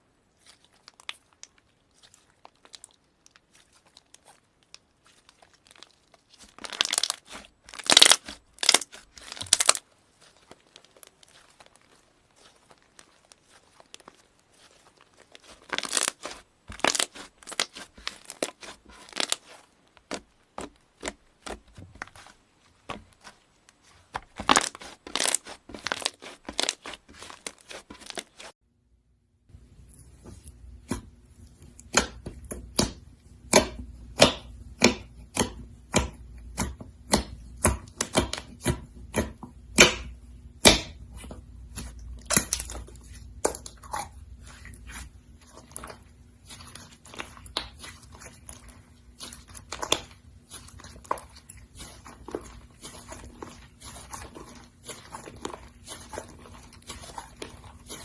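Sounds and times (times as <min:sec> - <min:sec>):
slime crackling and popping: 0:00.3 - 0:28.5, 0:31.8 - 0:58.0
low steady hum: 0:28.7 - 0:58.0.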